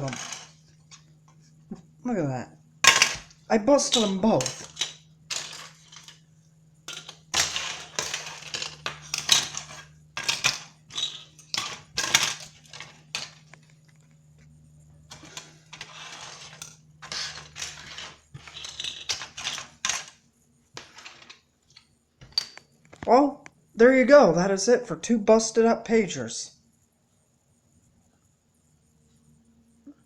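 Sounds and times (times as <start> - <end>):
plastic pieces clattering: 0.0 - 1.0, 2.8 - 6.3, 6.9 - 14.5, 15.1 - 20.2, 20.8 - 23.1.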